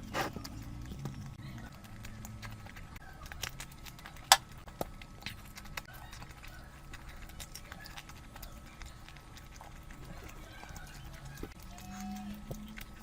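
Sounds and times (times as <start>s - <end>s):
wet chewing and lip-smacking: 0.0s - 13.0s.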